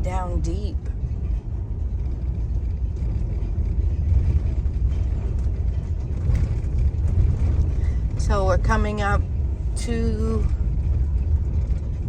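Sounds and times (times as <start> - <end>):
vehicle rumble from inside cab: 0.0 - 12.0.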